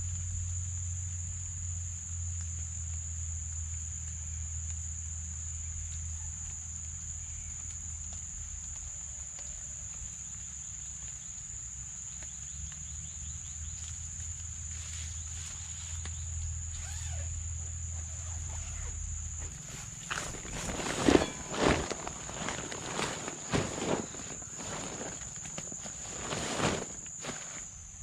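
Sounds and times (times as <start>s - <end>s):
crickets chirping: 0.0s - 28.0s
drops tapping on a tarp: 18.0s - 27.7s.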